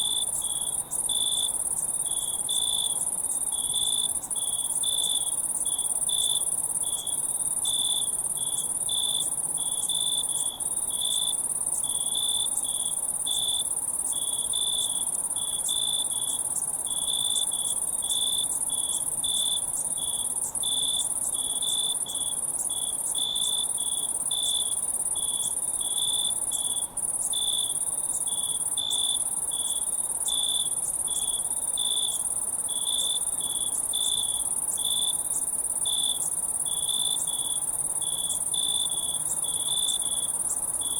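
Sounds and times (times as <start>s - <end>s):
crickets chirping: 0.0s - 40.9s
high-pitched insect trill: 0.0s - 40.9s.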